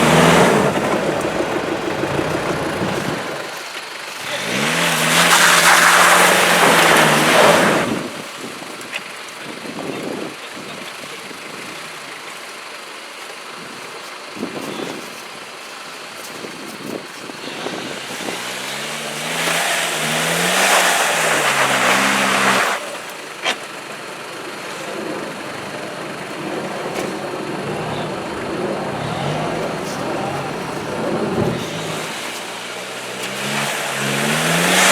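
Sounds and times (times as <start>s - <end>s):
engine revving under load: 0.0s - 8.4s, 17.4s - 34.9s
loud rushing noise: 26.3s - 34.9s.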